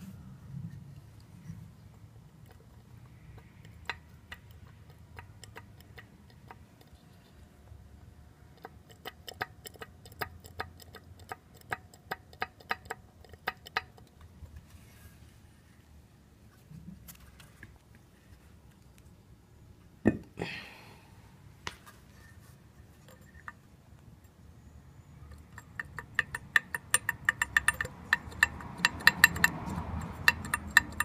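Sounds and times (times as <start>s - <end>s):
low steady hum: 0.0s - 31.0s.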